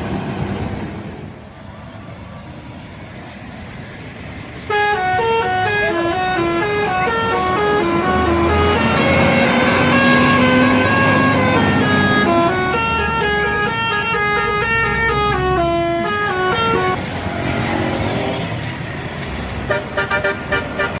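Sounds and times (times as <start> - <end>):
low engine rumble: 0.0 - 17.7
multi-tone air horn tune: 4.7 - 17.0, 19.7 - 21.0.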